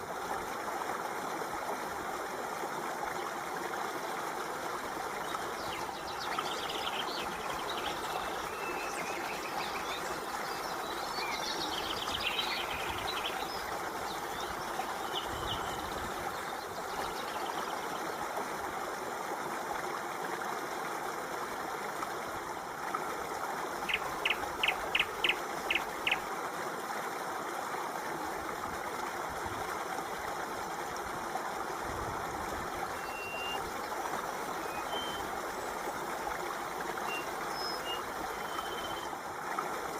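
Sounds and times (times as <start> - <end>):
stream water flowing: 0.0 - 39.9
birds chirping: 5.2 - 18.0, 37.0 - 39.1.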